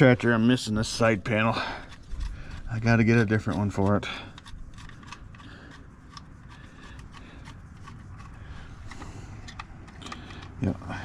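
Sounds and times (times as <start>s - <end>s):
low steady hum: 0.0s - 11.0s
light clicks and taps of handling: 3.4s - 10.8s.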